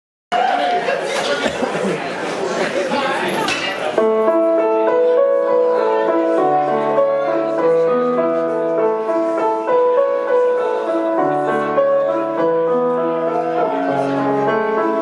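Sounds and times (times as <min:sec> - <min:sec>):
slow piano music over sound system: 0:04.0 - 0:15.0.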